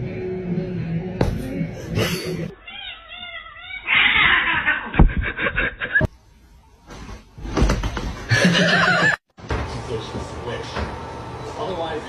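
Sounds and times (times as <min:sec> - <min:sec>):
people laughing: 0:08.3 - 0:09.2.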